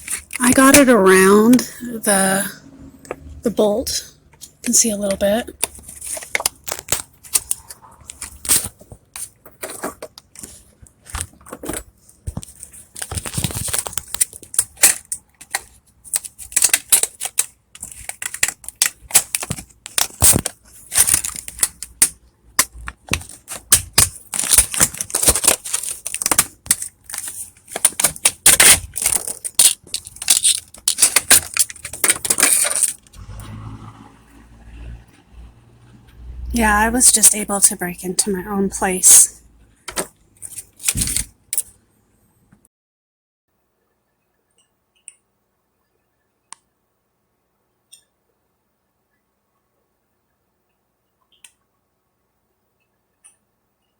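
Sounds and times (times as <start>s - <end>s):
plastic packaging crinkling: 0.0s - 0.8s, 4.6s - 33.1s, 40.4s - 41.7s.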